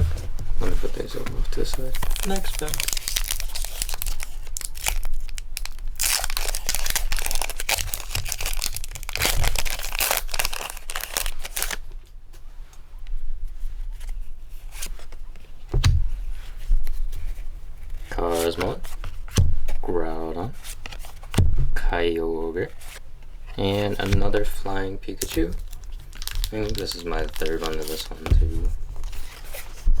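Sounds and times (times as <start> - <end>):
soft bump: 0.0 - 1.4, 15.7 - 17.1, 19.3 - 19.8, 21.3 - 21.9, 28.2 - 29.1
foil wrapper crinkling and tearing: 1.6 - 12.0, 25.1 - 29.6.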